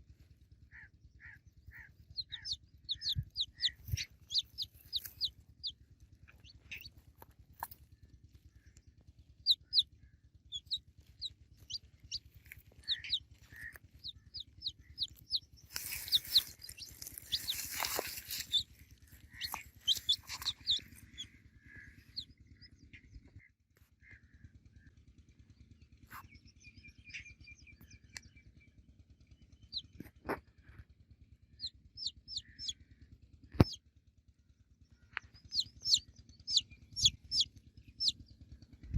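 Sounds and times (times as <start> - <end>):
baby chicks peeping: 0.7 - 8.4, 9.3 - 9.9, 10.5 - 23.4, 29.6 - 30.5, 31.6 - 32.8, 33.5 - 33.8, 35.1 - 38.9
noisy rustling: 15.7 - 18.8.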